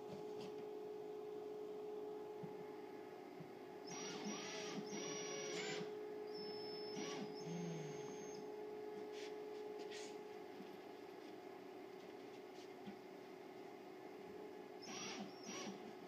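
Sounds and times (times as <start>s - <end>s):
cordless drill driving screws: 3.9s - 5.9s, 6.9s - 7.5s, 14.8s - 15.8s.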